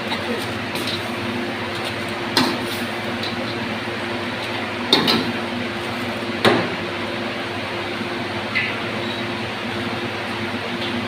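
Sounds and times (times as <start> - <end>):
kitchen background hiss and hum: 0.0 - 11.0.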